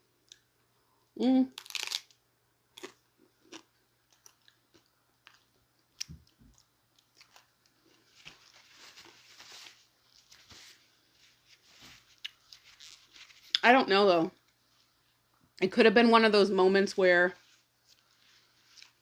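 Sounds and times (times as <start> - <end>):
chewing food: 2.8 - 9.2.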